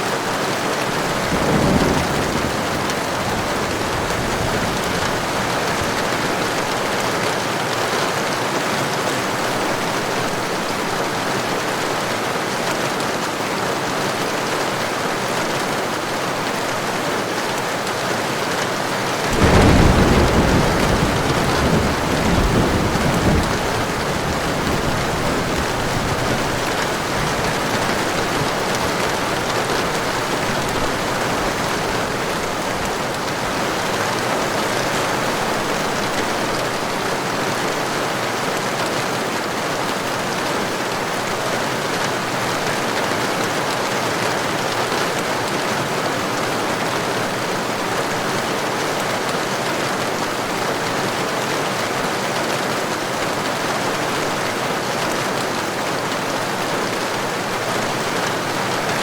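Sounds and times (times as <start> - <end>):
heavy rain hissing: 0.2 - 7.2, 18.7 - 38.8.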